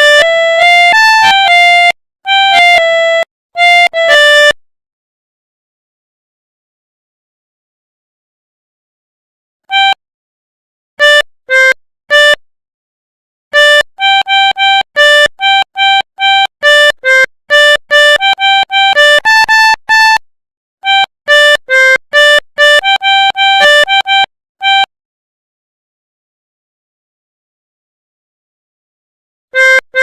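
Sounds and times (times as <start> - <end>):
melodica playing short notes: 0.0 - 4.6, 9.7 - 10.0, 11.0 - 12.4, 13.6 - 20.2, 20.8 - 24.9, 29.6 - 30.0.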